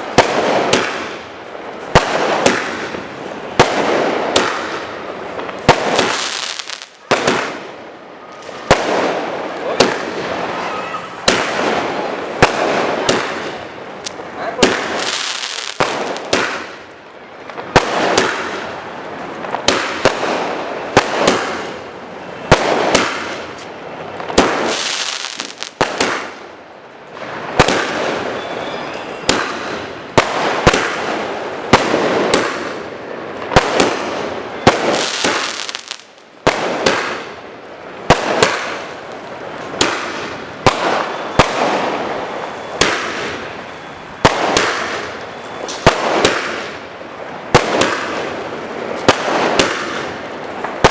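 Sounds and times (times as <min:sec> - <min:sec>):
firework cake bangs: 0:00.0 - 0:01.2, 0:02.0 - 0:04.9, 0:05.7 - 0:07.7, 0:08.4 - 0:16.8, 0:17.7 - 0:18.6, 0:22.5 - 0:23.5, 0:27.6 - 0:32.8, 0:33.5 - 0:37.3, 0:39.7 - 0:42.1, 0:42.7 - 0:43.4, 0:44.2 - 0:46.8, 0:47.5 - 0:48.4, 0:49.0 - 0:50.9
firework crackling burst: 0:00.0 - 0:16.9.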